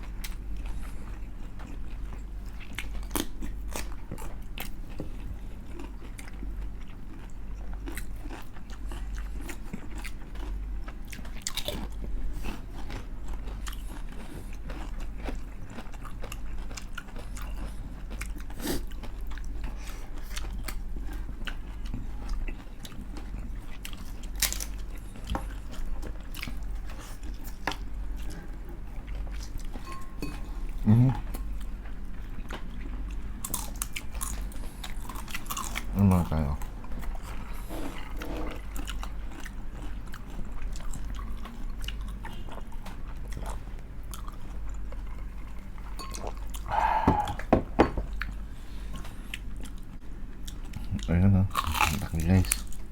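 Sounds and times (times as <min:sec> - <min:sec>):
low steady hum: 0:00.0 - 0:52.9
crunching fried chicken skin: 0:24.1 - 0:25.0.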